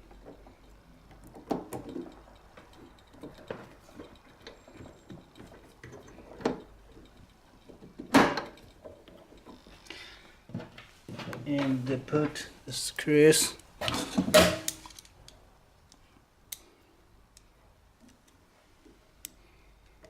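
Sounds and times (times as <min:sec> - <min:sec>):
metal parts knocking and clicking: 0:13.8 - 0:15.2.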